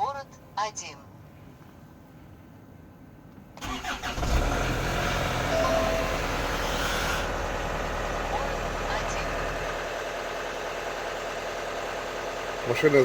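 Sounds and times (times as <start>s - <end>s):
engine cranking: 3.6s - 7.9s
diesel engine idling: 3.6s - 13.0s.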